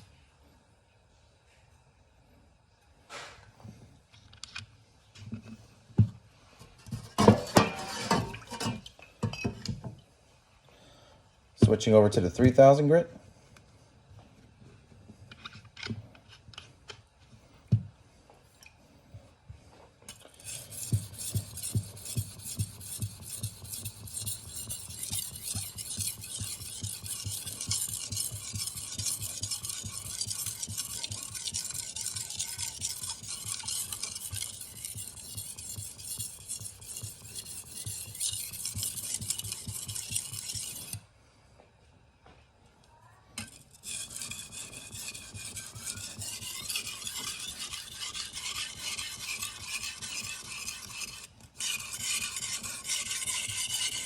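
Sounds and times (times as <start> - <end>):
knife scraping on whetstone: 6.8 - 8.8, 20.1 - 41.0, 43.4 - 54.0.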